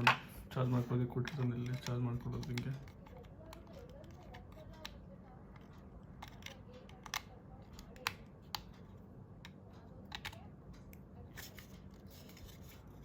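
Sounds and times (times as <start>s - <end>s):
small plastic clicks: 5.6s - 8.8s.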